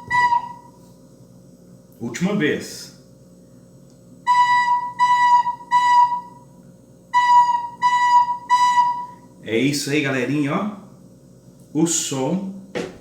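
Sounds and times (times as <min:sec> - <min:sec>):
recorder playing short notes: 0:00.0 - 0:00.8, 0:04.2 - 0:06.4, 0:07.1 - 0:09.2.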